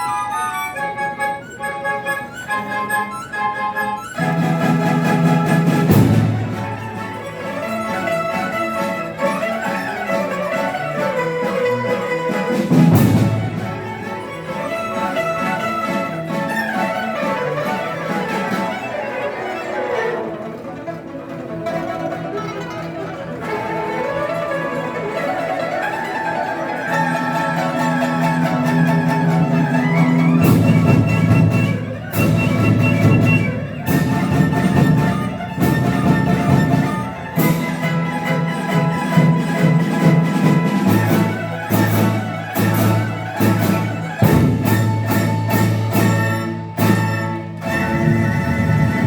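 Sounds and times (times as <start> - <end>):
traditional orchestra playing: 0.0 - 49.0
accented percussion hits: 4.2 - 8.6, 12.2 - 16.4, 20.7 - 49.0.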